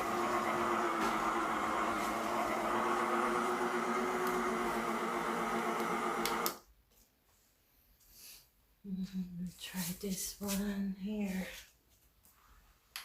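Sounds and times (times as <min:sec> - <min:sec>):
spin mop motor humming: 0:00.0 - 0:06.6
clicks: 0:05.8 - 0:06.6.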